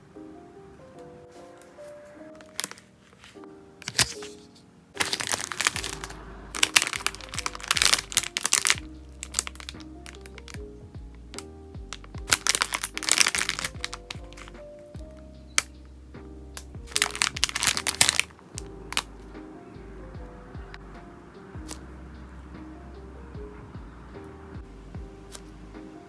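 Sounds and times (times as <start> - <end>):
background music: 0.0 - 26.0
plastic packaging crackling: 1.8 - 10.6, 11.3 - 14.6, 16.6 - 19.1.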